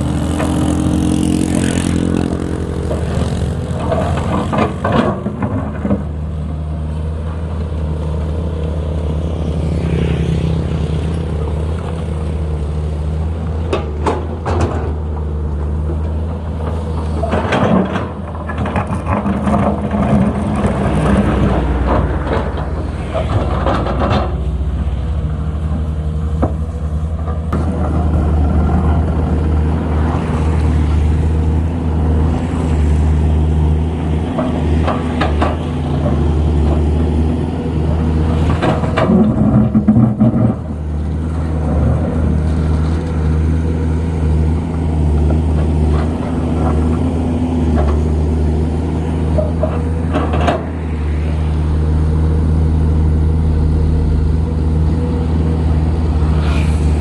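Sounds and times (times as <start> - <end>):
excavator diesel engine running: 0.0 - 57.0
knocks and clanks: 38.4 - 40.7.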